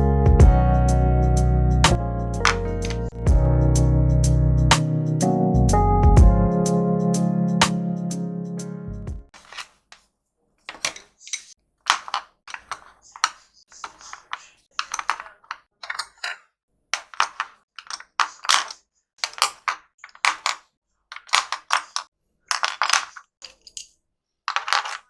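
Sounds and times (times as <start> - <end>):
pencils clicking together: 2.4 - 3.1, 9.4 - 23.9, 24.5 - 25.0.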